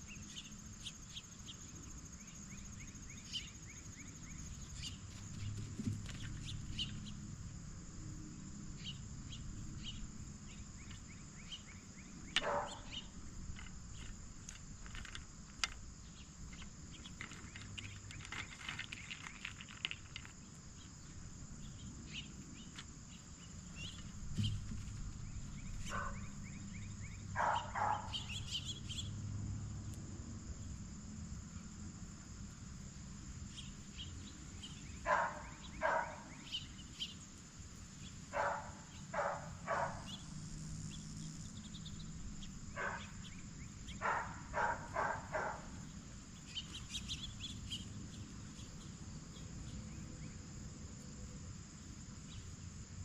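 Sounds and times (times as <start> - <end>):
crickets droning: 0.0 - 53.0.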